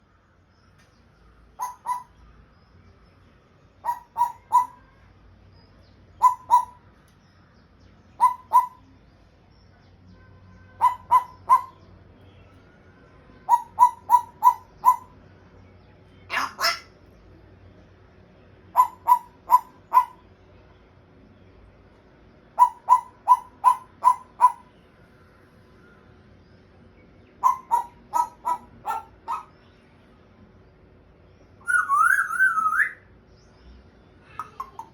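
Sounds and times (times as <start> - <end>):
parrot calling: 1.6 - 2.2, 3.8 - 4.8, 6.2 - 6.8, 8.2 - 8.9, 10.8 - 11.8, 13.4 - 15.2, 16.3 - 17.0, 18.7 - 20.2, 22.5 - 24.7, 27.4 - 29.6, 31.6 - 33.0, 34.3 - 34.9.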